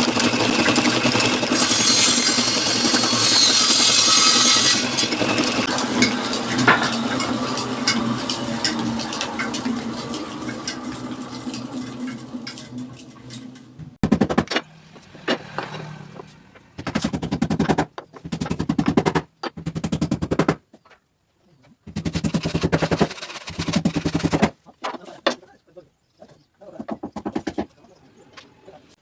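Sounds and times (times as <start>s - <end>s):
power tool rattling hammering: 0.0s - 15.8s, 16.8s - 20.6s, 21.9s - 24.6s
irregular clatter: 21.8s - 25.6s.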